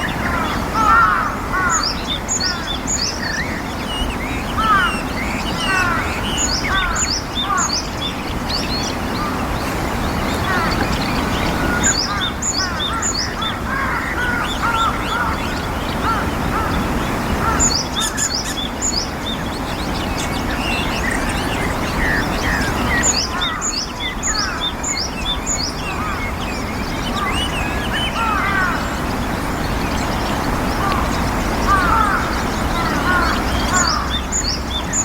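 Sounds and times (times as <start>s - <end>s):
birds chirping: 0.0s - 35.0s.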